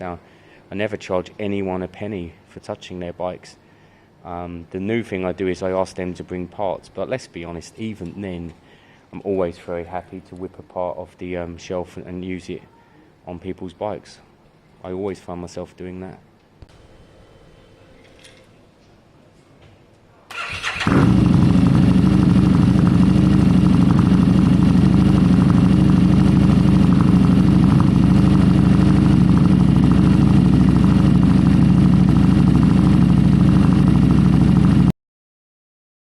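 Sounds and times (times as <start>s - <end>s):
motorcycle engine running: 20.4s - 34.9s.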